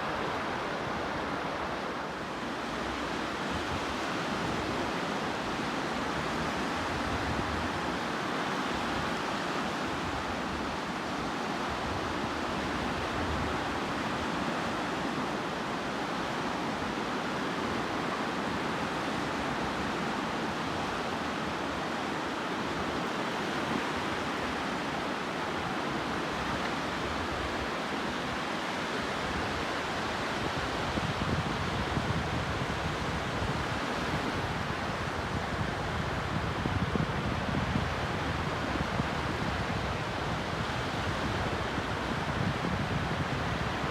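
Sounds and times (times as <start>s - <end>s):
sea surf washing onto shore: 0.0s - 43.9s.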